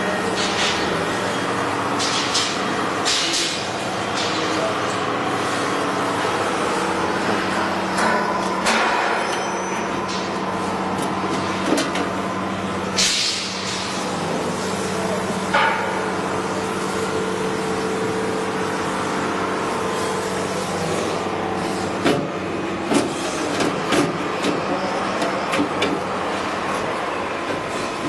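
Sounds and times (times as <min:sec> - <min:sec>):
grinding machine humming: 0:02.6 - 0:28.0.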